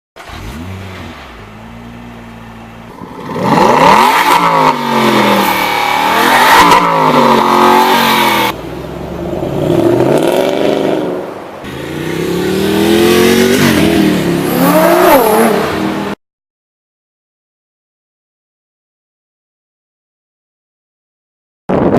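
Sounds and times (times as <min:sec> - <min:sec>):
sports car engine revving: 0:00.2 - 0:16.2.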